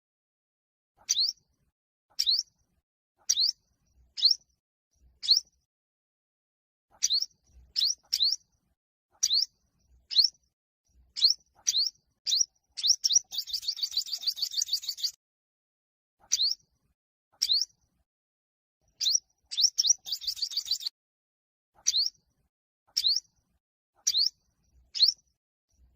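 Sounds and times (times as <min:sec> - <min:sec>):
bird chirping and trilling: 0:01.0 - 0:01.5, 0:02.1 - 0:02.5, 0:03.2 - 0:03.6, 0:04.2 - 0:04.5, 0:05.2 - 0:05.5, 0:06.9 - 0:08.5, 0:09.2 - 0:10.4, 0:11.2 - 0:15.2, 0:16.2 - 0:16.7, 0:17.4 - 0:17.8, 0:18.9 - 0:20.9, 0:21.8 - 0:22.2, 0:22.9 - 0:23.4, 0:24.0 - 0:25.3.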